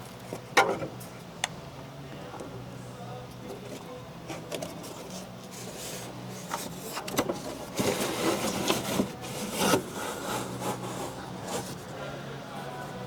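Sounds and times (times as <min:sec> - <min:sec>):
scraping and rubbing: 0:03.6 - 0:12.0.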